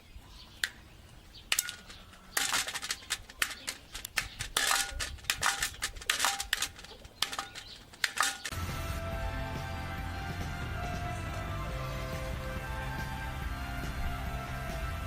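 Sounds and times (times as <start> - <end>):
sharp clicking and tapping: 1.5 - 8.6.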